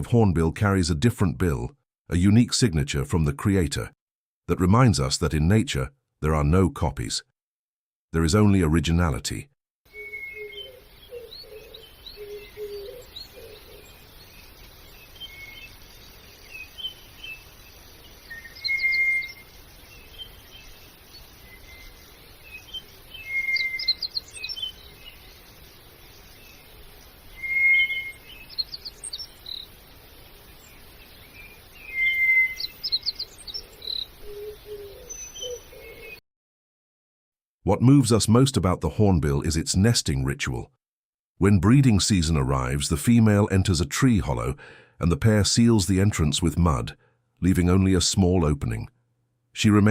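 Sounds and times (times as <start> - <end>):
bird singing: 9.9 - 36.2
lower bird calls: 9.9 - 36.2
faint background hiss: 10.5 - 36.0.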